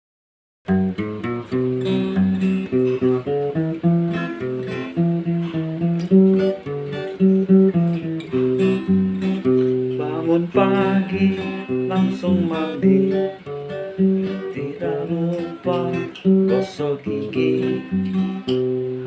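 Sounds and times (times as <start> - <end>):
acoustic guitar strumming: 0.7 - 19.0.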